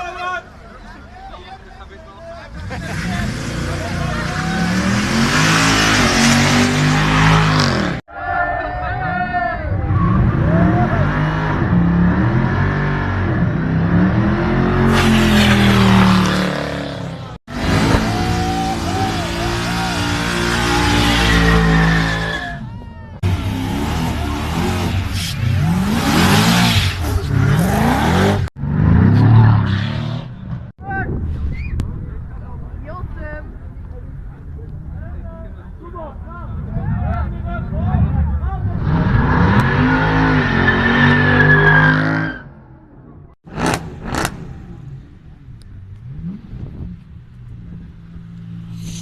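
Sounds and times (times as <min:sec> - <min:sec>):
engine revving: 0:02.9 - 0:08.0, 0:10.0 - 0:22.6, 0:23.2 - 0:30.7, 0:43.4 - 0:47.0.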